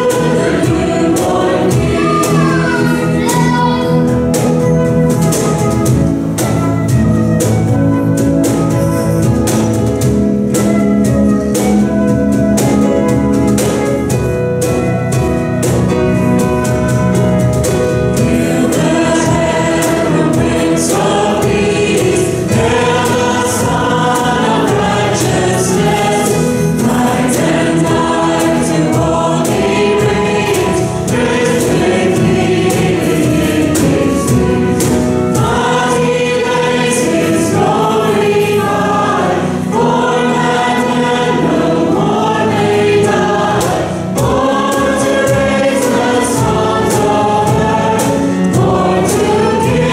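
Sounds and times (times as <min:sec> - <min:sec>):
congregation singing a hymn: 0:00.0 - 0:49.9
instrumental accompaniment: 0:00.0 - 0:49.9
steady beat: 0:00.0 - 0:49.9.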